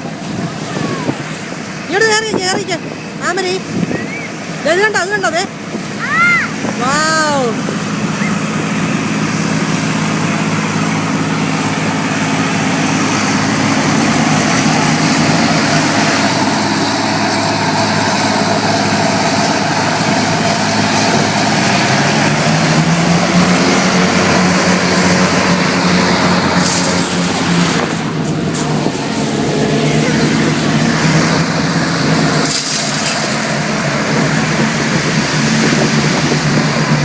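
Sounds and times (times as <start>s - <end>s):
hovercraft engine hum: 0.0s - 37.0s
rushing air and spray: 5.5s - 37.0s.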